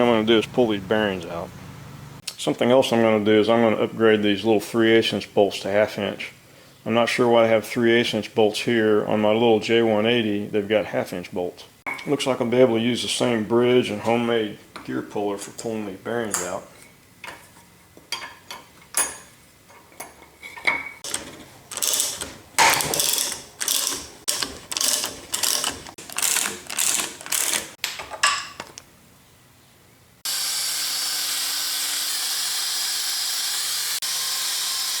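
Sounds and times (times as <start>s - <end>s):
steady hiss with low hum: 0.0s - 24.2s
ratchet wrench clicking: 21.0s - 27.8s.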